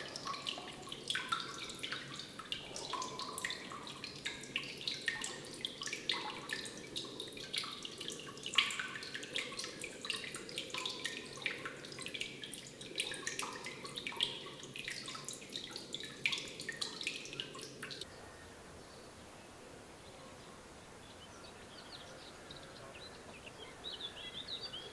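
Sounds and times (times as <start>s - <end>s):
water dripping: 0.0s - 18.1s
low background noise: 0.0s - 24.9s.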